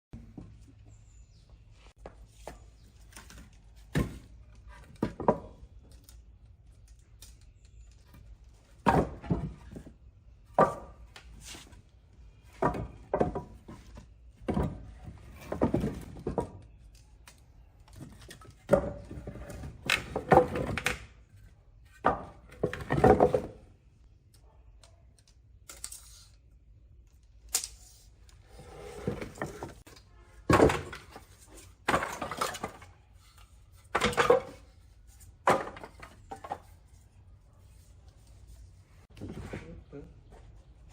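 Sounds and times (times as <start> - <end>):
wooden boards knocking together: 4.9 - 5.6, 8.7 - 11.7, 12.5 - 16.6, 18.0 - 21.2, 22.0 - 23.6, 30.4 - 32.9, 33.8 - 34.7, 35.4 - 36.7.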